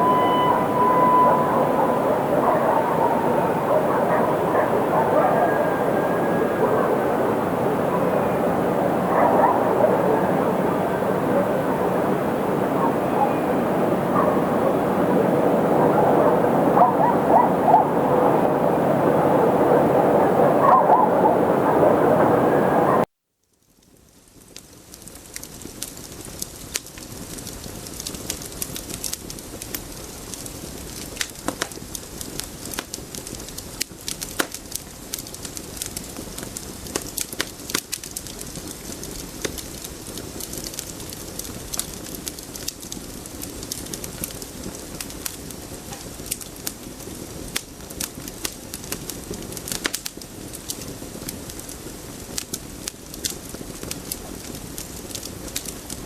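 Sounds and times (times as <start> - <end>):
steady noisy ambience: 0.0 - 23.1
sharp crackles and clicks: 23.5 - 56.0.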